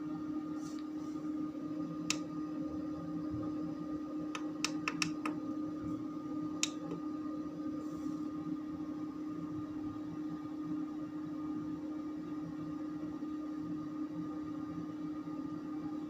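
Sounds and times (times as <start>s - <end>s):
steady hum: 0.0s - 16.0s
sharp clicks: 4.4s - 5.4s.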